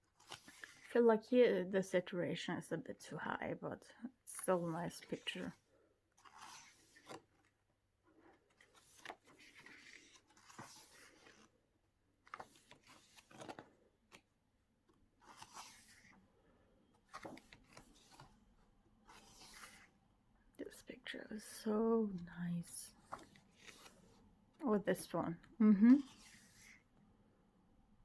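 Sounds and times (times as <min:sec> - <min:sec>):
pages of a book turning: 0:00.1 - 0:00.9, 0:04.9 - 0:16.3, 0:16.9 - 0:20.0, 0:22.1 - 0:24.9, 0:26.0 - 0:26.9.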